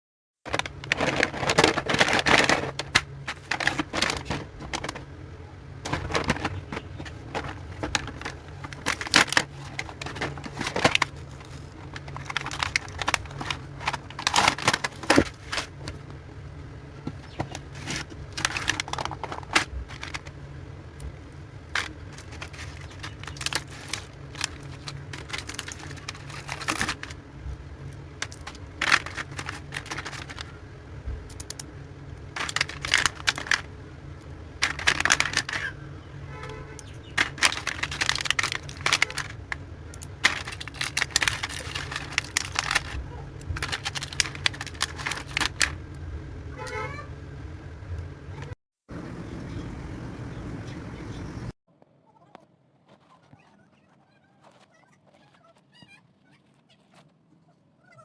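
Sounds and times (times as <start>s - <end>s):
plastic toys clicking and rustling: 0.5s - 5.1s, 5.8s - 16.0s, 17.0s - 20.4s, 21.7s - 27.2s, 27.8s - 30.6s, 31.2s - 33.7s, 34.6s - 35.8s, 36.5s - 45.9s
low steady hum: 0.5s - 58.0s.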